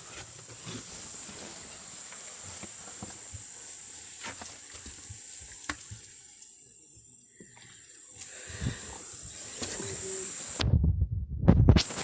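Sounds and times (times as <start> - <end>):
high-pitched insect drone: 8.7 - 10.6.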